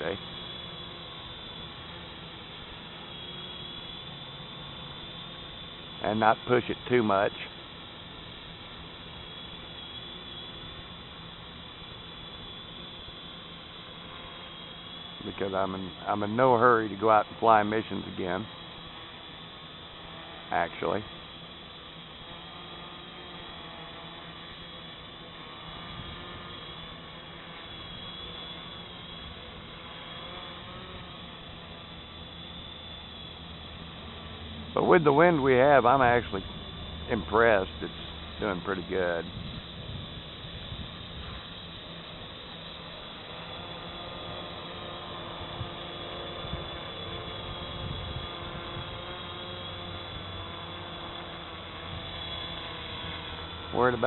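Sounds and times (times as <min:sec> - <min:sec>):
drone motors buzzing: 0:00.0 - 0:54.0
high wavering whine: 0:00.0 - 0:54.0
wind buffeting microphone: 0:39.2 - 0:41.4.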